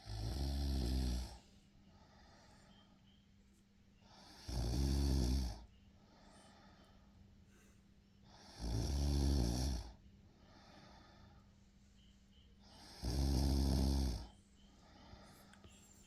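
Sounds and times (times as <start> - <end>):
boy snoring: 0.0 - 1.4, 4.2 - 5.6, 8.4 - 9.9, 12.8 - 14.3.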